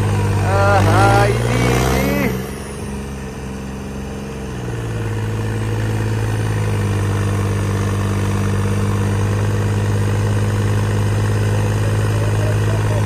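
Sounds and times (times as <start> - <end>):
tractor diesel engines under load: 0.0 - 13.0.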